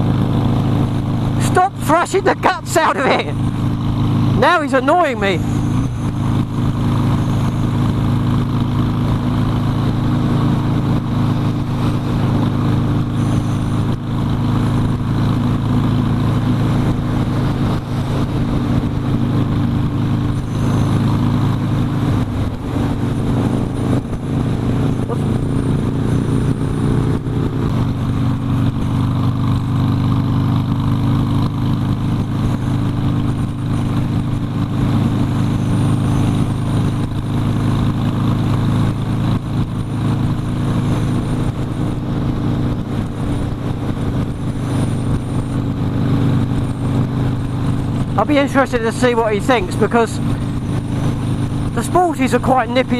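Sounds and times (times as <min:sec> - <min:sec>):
motorcycle engine cruising: 0:00.0 - 0:52.9.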